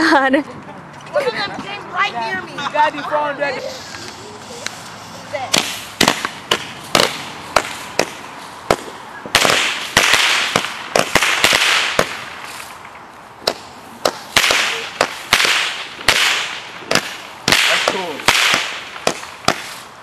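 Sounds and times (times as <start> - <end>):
fireworks crackling hiss: 3.5 - 20.0
fireworks bangs: 4.0 - 19.9.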